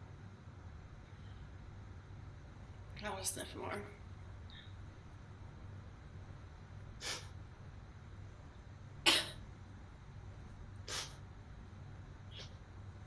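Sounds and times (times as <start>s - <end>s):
woman's sharp nasal breaths: 7.0s - 7.4s, 10.9s - 11.2s.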